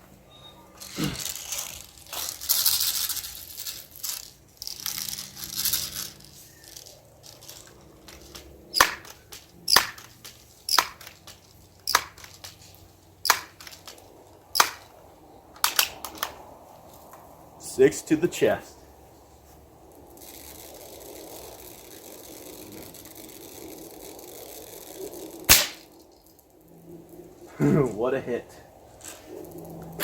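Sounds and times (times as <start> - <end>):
air rifle pump hissing: 8.1 - 12.6, 13.2 - 14.0, 14.6 - 15.0.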